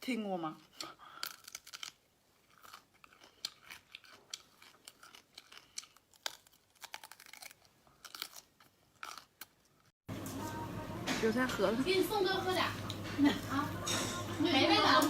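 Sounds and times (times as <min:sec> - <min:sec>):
chewing crisp food: 0:00.5 - 0:09.9.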